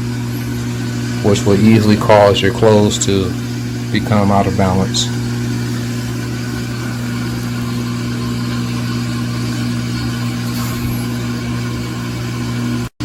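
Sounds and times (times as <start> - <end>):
washer motor hum: 0.0 - 13.0.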